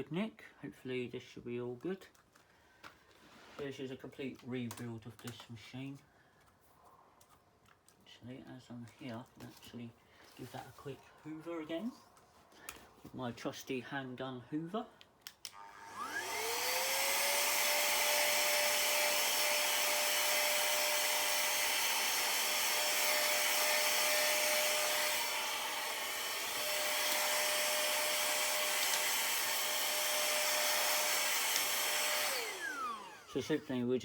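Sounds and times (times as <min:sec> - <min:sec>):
handheld vacuum cleaner running: 0:15.5 - 0:33.7.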